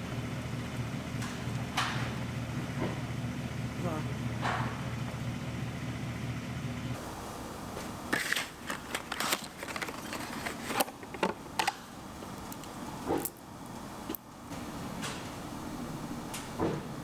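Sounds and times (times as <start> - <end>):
hand tools clicking and knocking: 8.1 - 11.9.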